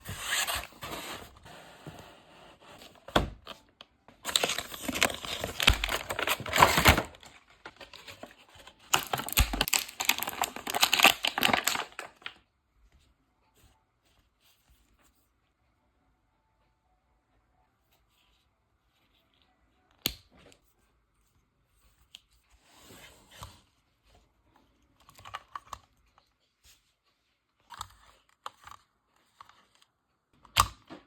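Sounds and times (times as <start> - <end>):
plastic and cardboard crinkling: 0.0 - 12.5.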